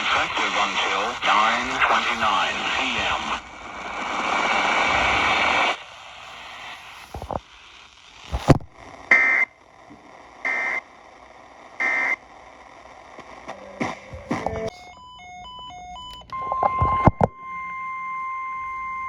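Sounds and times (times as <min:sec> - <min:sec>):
radio hiss: 0:00.0 - 0:14.9.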